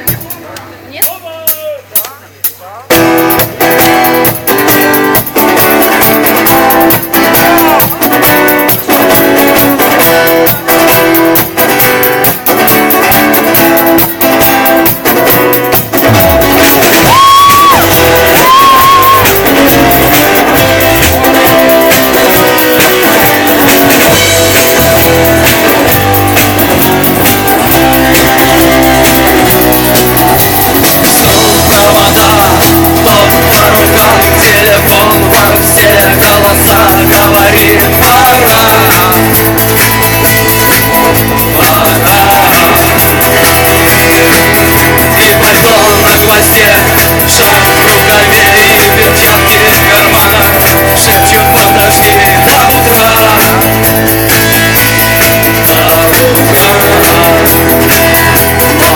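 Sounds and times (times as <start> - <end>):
bass and drums: 0.0 - 58.9
guitar strumming: 2.9 - 58.9
high wavering notes: 16.1 - 58.9.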